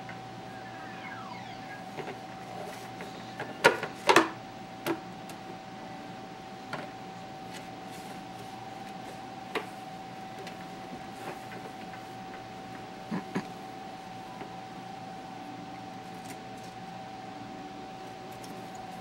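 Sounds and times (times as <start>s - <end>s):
faint steady tone: 0.3s - 3.7s.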